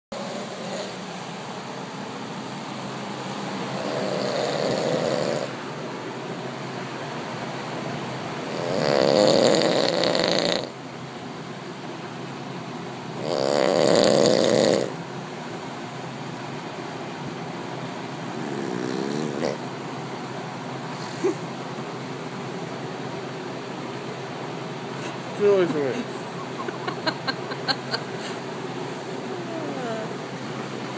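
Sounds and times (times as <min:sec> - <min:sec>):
man snoring: 0:00.2 - 0:01.0, 0:03.8 - 0:05.6, 0:08.5 - 0:10.8, 0:13.2 - 0:15.0, 0:18.4 - 0:19.6.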